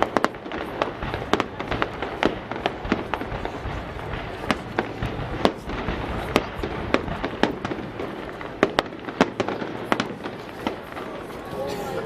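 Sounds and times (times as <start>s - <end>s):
firework bangs: 0.0s - 12.0s
fireworks rumble and crackle: 0.0s - 12.0s.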